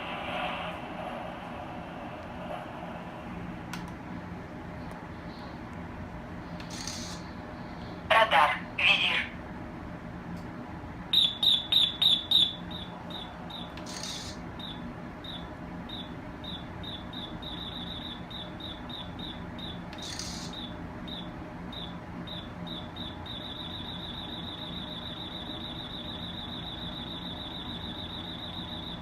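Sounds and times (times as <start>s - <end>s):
low steady hum: 0.0s - 29.0s
radar detector beeping: 11.2s - 29.0s.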